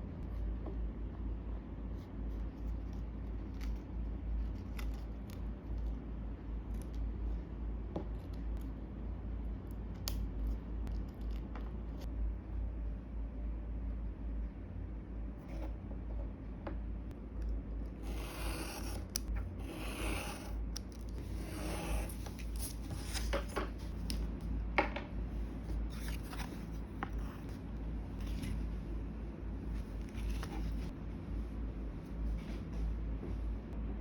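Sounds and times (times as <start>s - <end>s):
steady low hum: 0.0s - 34.0s
light scratching on paper: 18.0s - 20.6s, 21.2s - 23.3s.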